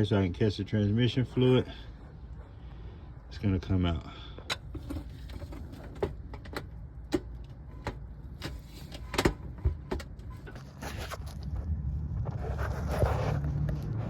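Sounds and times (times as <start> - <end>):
metal tools clicking and knocking: 4.4 - 10.2.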